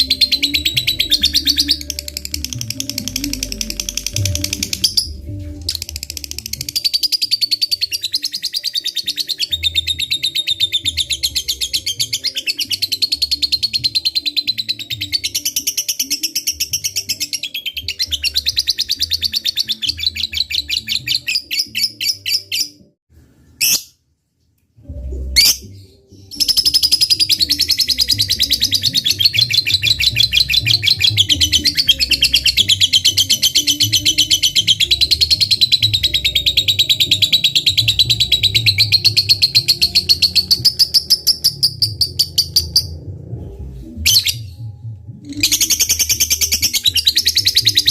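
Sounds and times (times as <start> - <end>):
lovebird chatter: 0.0 - 10.2.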